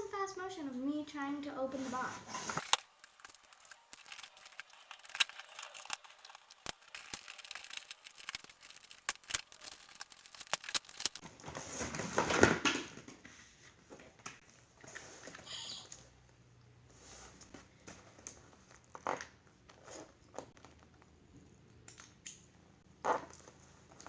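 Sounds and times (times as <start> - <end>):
packaging rustle: 2.4 - 11.2
cardboard and plastic crinkling: 2.4 - 12.8.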